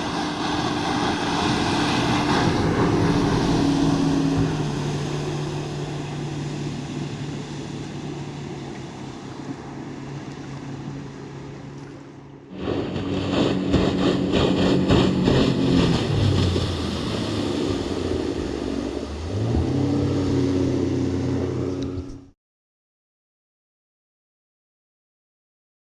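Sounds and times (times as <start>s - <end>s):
outboard motor running: 0.0s - 22.4s
water noise: 0.0s - 22.4s
wind: 0.0s - 22.4s.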